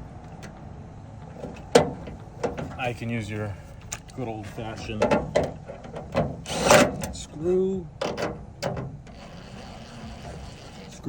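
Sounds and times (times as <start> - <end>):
latch parts scraping: 4.7 - 7.3, 8.0 - 10.9.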